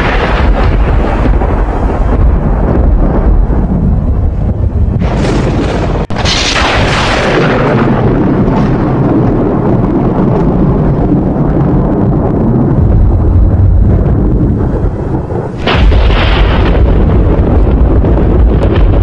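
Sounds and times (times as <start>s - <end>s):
rolling thunder rumble: 0.0s - 19.0s
thunderclap: 0.0s - 19.0s.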